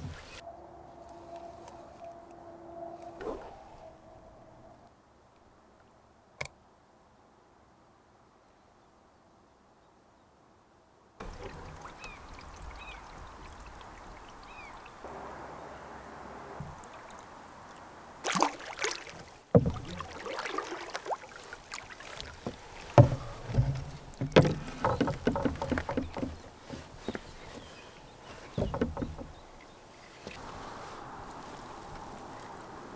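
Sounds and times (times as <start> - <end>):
water lapping: 0.0 - 4.8, 11.2 - 32.9
loud splashes in water: 11.2 - 23.0
knocks against canoe hull: 18.3 - 30.4.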